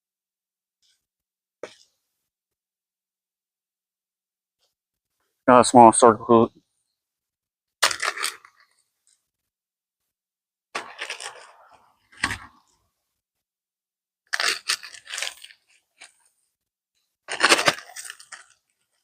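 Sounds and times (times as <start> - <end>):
crinkling tearing handling noise: 7.8 - 8.8, 10.8 - 12.6, 14.3 - 16.3, 17.3 - 19.0.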